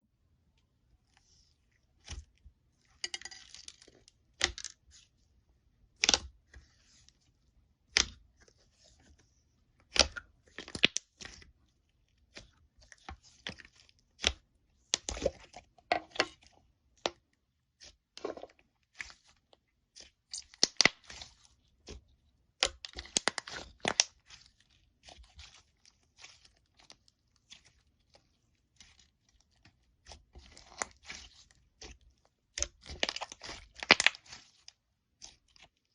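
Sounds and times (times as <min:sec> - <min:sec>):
slime squishing and popping: 0:20.0 - 0:27.8, 0:28.6 - 0:35.7.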